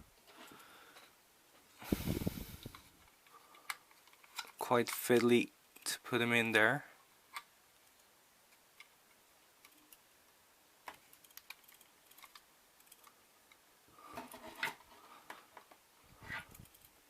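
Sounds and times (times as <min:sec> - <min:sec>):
small plastic parts clicking: 0:02.6 - 0:05.9, 0:10.8 - 0:13.6.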